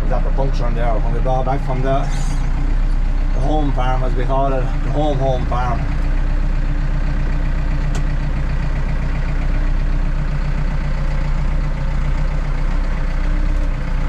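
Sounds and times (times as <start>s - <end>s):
tractor diesel engine running: 0.0s - 14.0s.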